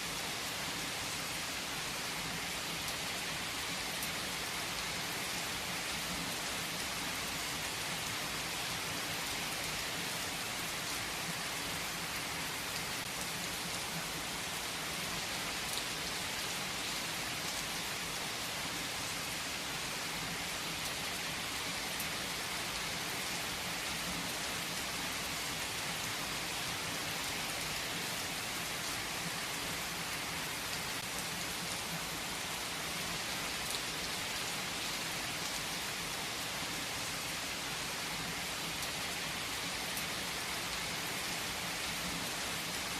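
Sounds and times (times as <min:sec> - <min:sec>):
steady rain falling: 0:00.0 - 0:42.9.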